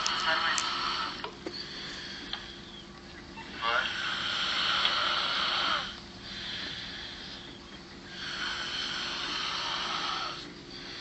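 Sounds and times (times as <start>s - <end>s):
woman snoring: 0.0s - 1.2s, 3.8s - 6.0s, 8.1s - 10.4s.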